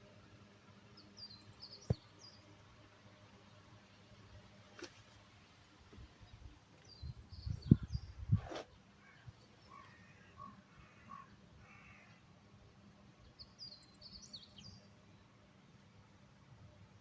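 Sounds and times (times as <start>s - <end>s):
faint bird calls: 7.4s - 12.2s.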